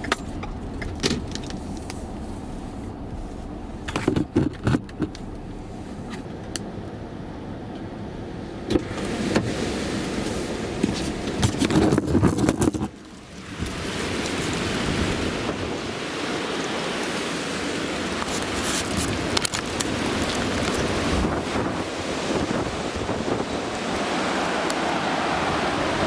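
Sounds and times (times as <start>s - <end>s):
wind buffeting microphone: 0.0s - 26.0s
knocks and clicks: 3.9s - 5.5s
storm wind rushing: 19.0s - 26.0s.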